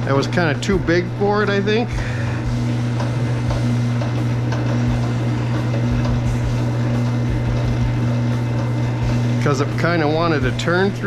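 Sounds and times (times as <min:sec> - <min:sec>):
wire stripping machine humming: 0:00.0 - 0:11.0.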